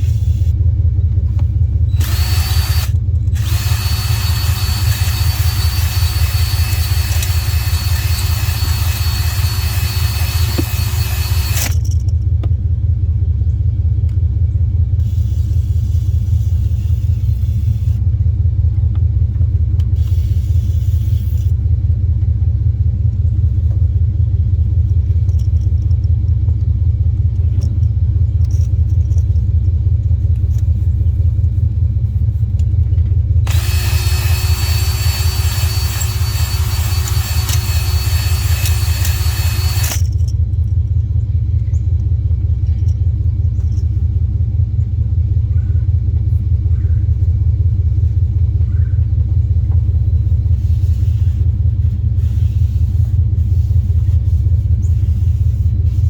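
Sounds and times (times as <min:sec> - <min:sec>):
electric drill whining: 0:02.0 - 0:11.9, 0:33.4 - 0:40.3.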